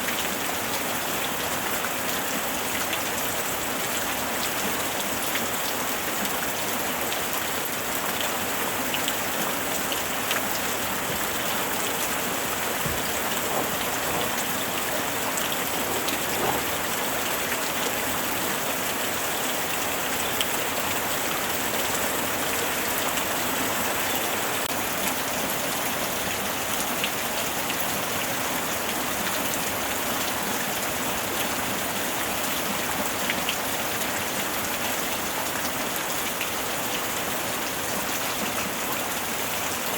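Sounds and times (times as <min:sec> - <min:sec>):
light rain hiss: 0:00.0 - 0:39.9
raindrops tapping on a surface: 0:09.8 - 0:17.6.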